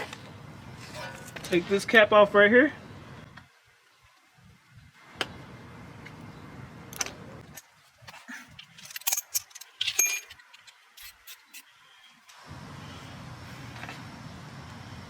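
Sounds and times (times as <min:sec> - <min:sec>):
metal tools clinking: 0:07.5 - 0:11.7.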